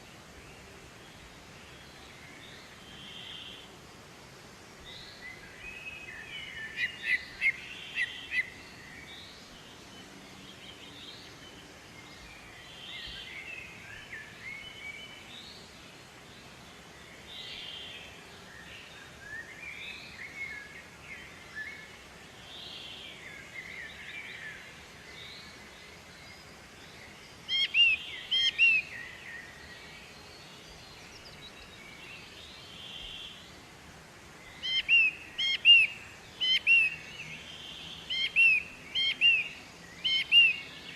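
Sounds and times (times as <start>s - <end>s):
faint steady hiss: 0.0s - 40.9s
bird chirping and trilling: 27.5s - 28.9s, 34.6s - 37.0s, 38.1s - 40.7s.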